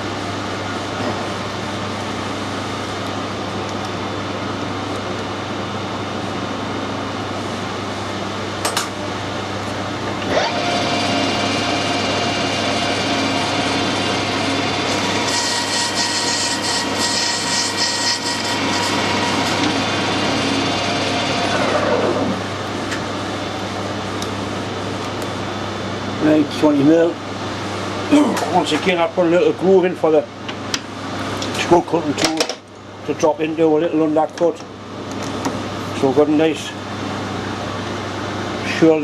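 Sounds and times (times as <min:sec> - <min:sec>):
metal lathe running: 0:10.0 - 0:24.0.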